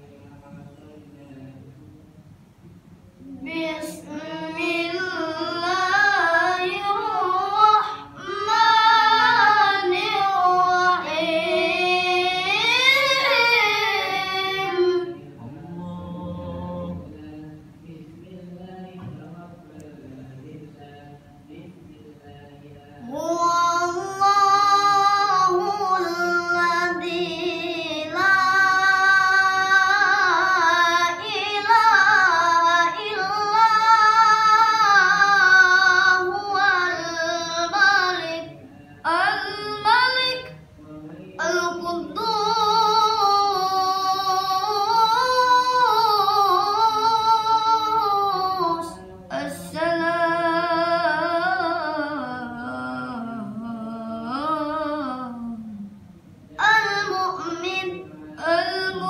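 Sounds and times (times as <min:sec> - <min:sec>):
child reciting melodically: 0:03.2 - 0:15.4, 0:23.0 - 0:40.6, 0:41.4 - 0:55.4, 0:56.6 - 0:59.0.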